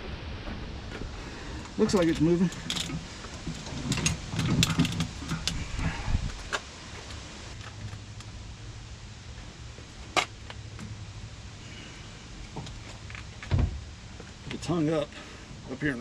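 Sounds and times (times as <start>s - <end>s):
steady low hum: 0.0s - 16.0s
hose scraping and knocking on metal: 1.7s - 8.0s.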